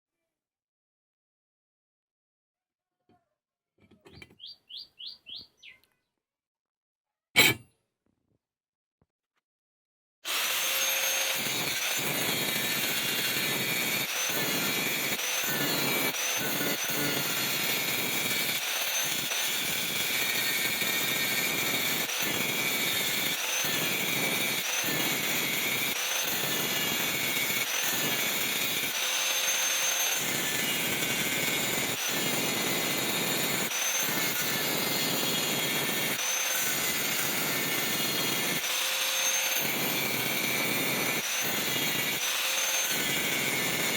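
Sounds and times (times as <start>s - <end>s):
electric grinder on steel: 10.3s - 43.9s.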